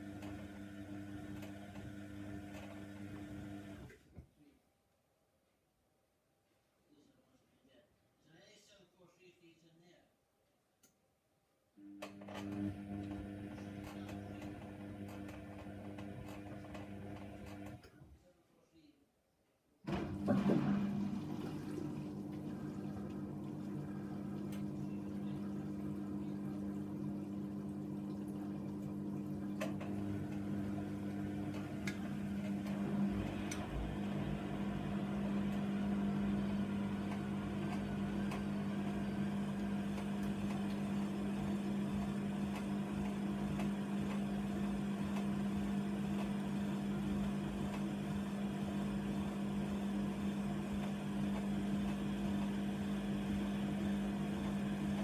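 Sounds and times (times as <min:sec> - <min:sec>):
washing machine motor hum: 0:00.0 - 0:04.0, 0:11.8 - 0:17.9, 0:19.9 - 0:55.0
water sloshing in drum: 0:20.2 - 0:24.7.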